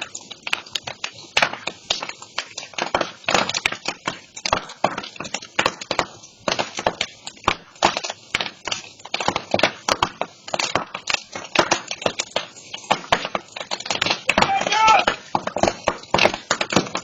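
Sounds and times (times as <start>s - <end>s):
burning brush crackling and popping: 0.0s - 17.0s.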